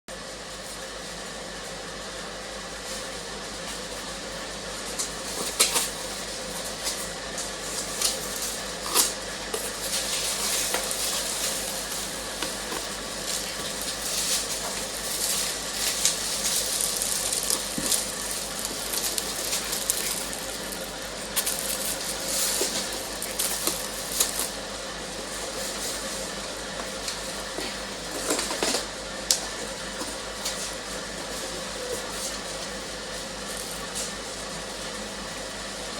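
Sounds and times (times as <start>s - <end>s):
steady mechanical hum: 0.1s - 35.9s
packaging rustling: 7.8s - 24.6s.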